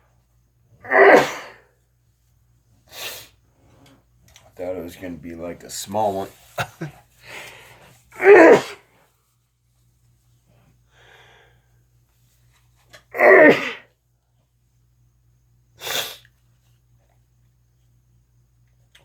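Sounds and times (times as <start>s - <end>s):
person sneezing: 0.8s - 1.7s, 8.2s - 8.8s, 13.1s - 13.9s, 15.8s - 16.3s.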